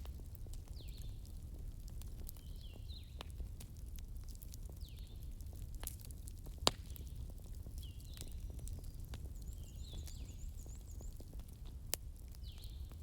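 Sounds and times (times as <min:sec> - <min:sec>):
wood fire crackling: 0:00.0 - 0:13.0
sharp fire pops: 0:04.6 - 0:10.2.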